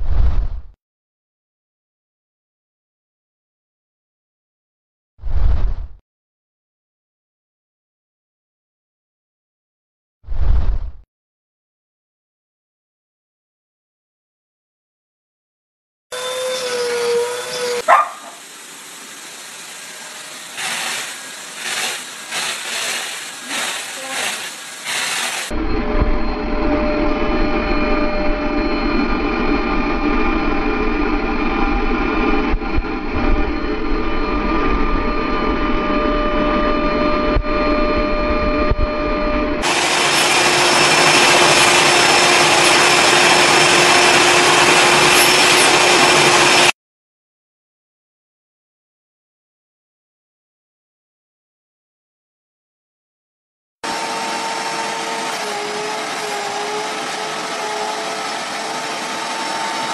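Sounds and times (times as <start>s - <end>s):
vacuum cleaner running: 16.2s - 46.7s, 53.8s - 59.9s.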